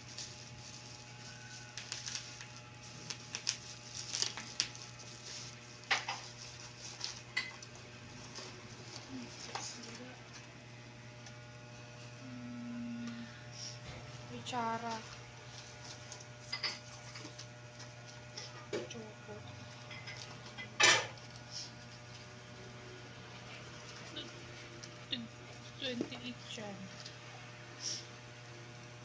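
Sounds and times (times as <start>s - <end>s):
packaging crinkling: 0.0s - 7.8s
steady low hum: 0.0s - 29.0s.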